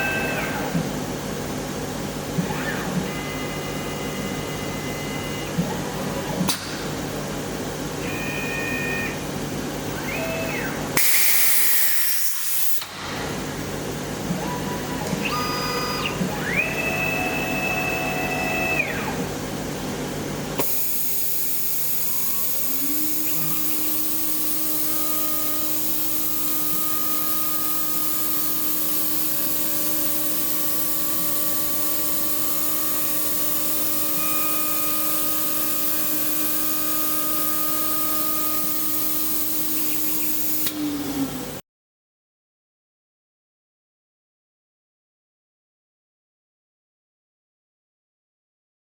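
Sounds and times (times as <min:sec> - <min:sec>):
burst of hiss: 0:11.0 - 0:12.9
axis motors whining: 0:14.2 - 0:41.6.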